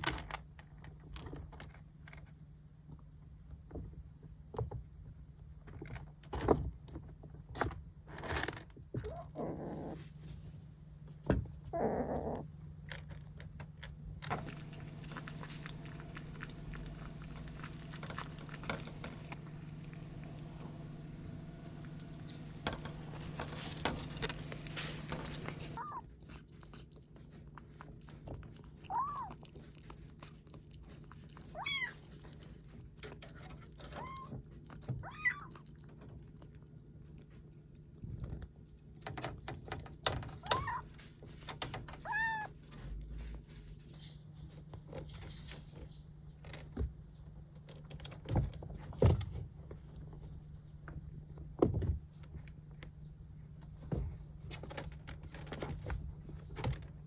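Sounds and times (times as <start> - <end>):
kittens mewing: 14.3 - 26.0.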